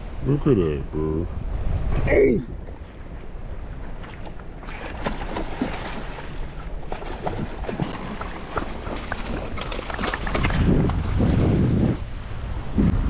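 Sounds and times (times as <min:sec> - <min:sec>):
wind buffeting microphone: 0:00.0 - 0:13.0
water splashing against rocks: 0:04.0 - 0:11.7.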